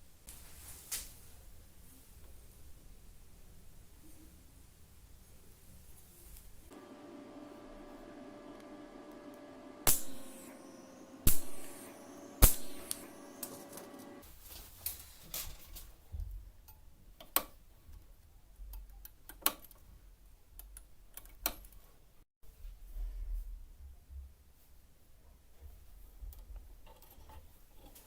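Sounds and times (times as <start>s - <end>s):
steady hum: 6.7s - 14.2s.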